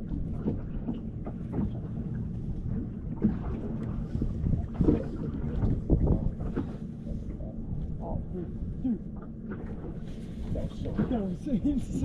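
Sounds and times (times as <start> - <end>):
water knocking against boat hull: 0.0 - 2.0, 2.7 - 6.8
low rumble of wind and water: 0.0 - 12.0.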